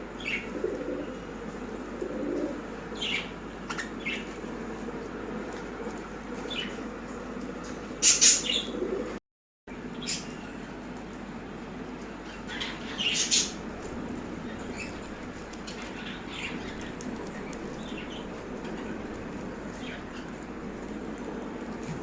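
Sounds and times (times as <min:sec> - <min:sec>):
pigeon wings flapping: 0:13.4 - 0:22.0.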